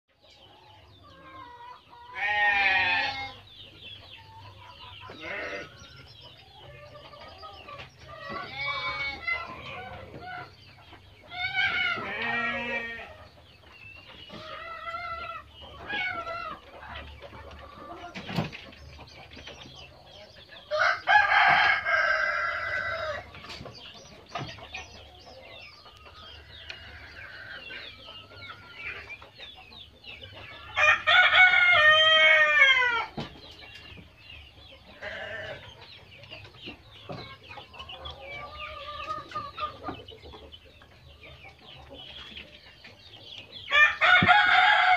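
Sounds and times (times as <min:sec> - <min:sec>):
chickens clucking: 0:00.1 - 0:44.9
roosters crowing: 0:00.8 - 0:03.6, 0:04.5 - 0:13.4, 0:14.3 - 0:18.2, 0:20.6 - 0:23.9, 0:26.1 - 0:29.1, 0:30.4 - 0:33.4, 0:34.8 - 0:35.8, 0:43.6 - 0:44.9.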